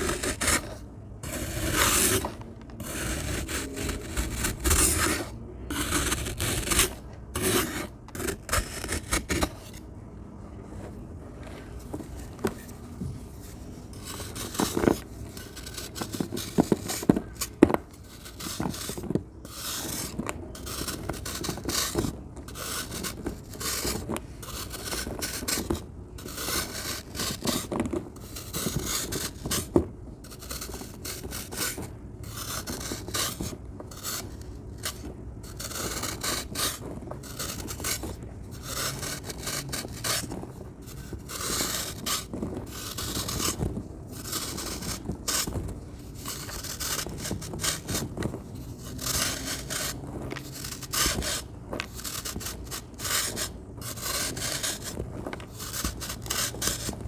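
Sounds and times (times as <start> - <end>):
sand being crumbled and scraped: 30.3 - 57.0.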